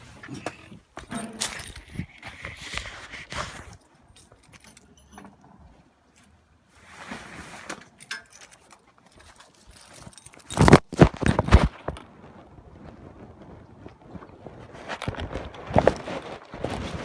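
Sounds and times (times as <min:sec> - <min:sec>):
light clicks and rattles: 0:00.2 - 0:06.4, 0:07.7 - 0:12.1
keys jangling: 0:01.0 - 0:02.5, 0:03.7 - 0:05.3, 0:08.0 - 0:11.6.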